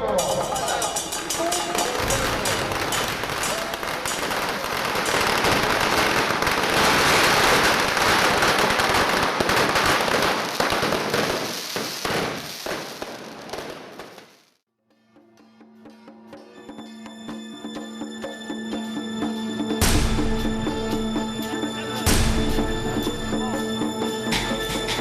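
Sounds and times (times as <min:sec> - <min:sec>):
firecrackers crackling: 0:00.4 - 0:14.6.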